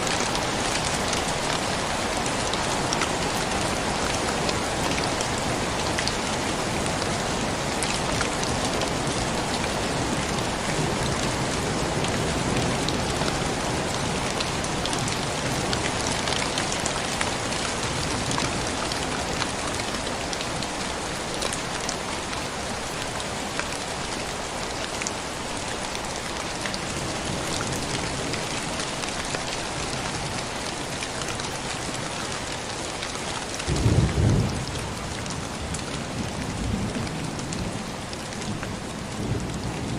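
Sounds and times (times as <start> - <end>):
heavy rain: 0.0 - 39.9
low rumble of thunder: 33.6 - 37.8, 38.4 - 39.9.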